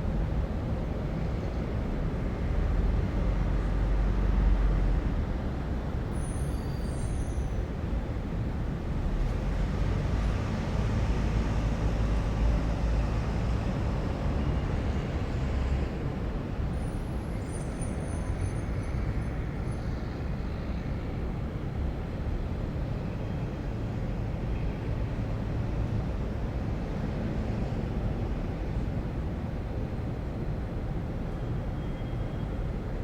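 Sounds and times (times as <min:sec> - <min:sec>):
rumble of road vehicles: 0:00.0 - 0:33.0
faint high-pitched squeak: 0:06.2 - 0:07.6.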